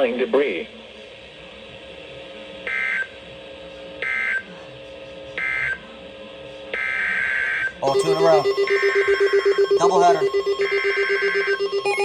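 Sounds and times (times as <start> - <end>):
faint steady low tones: 7.9 - 12.0.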